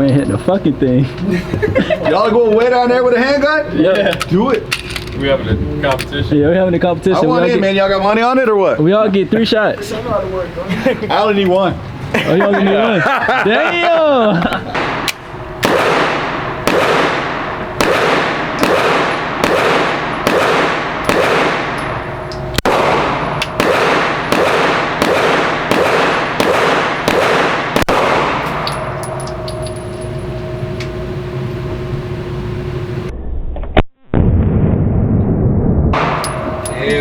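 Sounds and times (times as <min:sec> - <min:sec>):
low rumble: 0:14.7 - 0:37.0
gunshots in indoor range: 0:14.8 - 0:30.2, 0:35.9 - 0:36.7.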